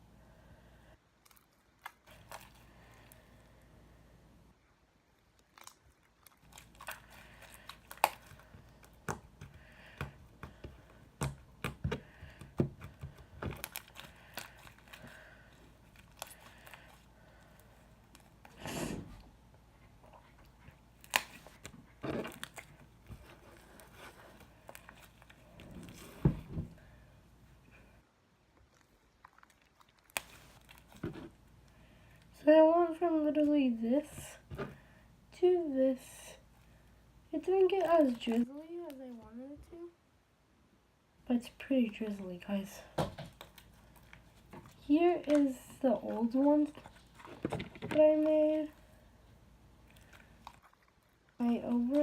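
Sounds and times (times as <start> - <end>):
slime crackling and tearing: 5.1 - 9.0.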